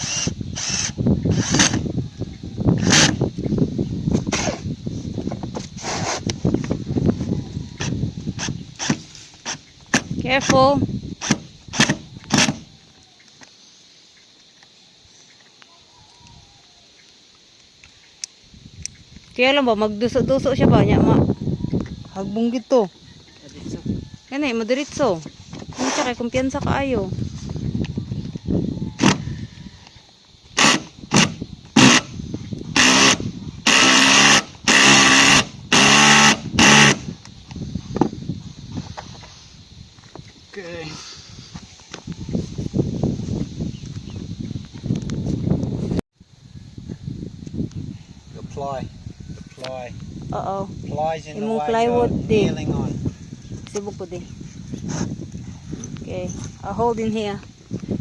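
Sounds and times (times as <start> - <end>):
power drill driving screws: 0.0 - 1.8, 2.8 - 3.2, 11.2 - 12.6, 30.6 - 32.1, 32.8 - 37.0.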